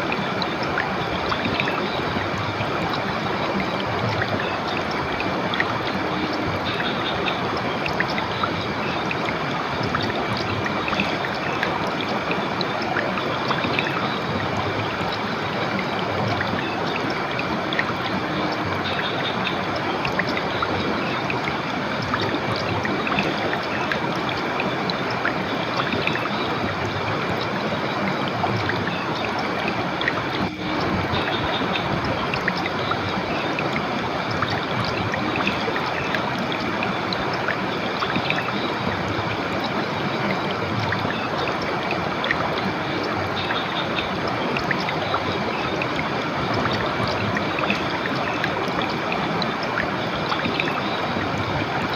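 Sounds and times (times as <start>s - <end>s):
river water flowing: 0.0s - 51.9s.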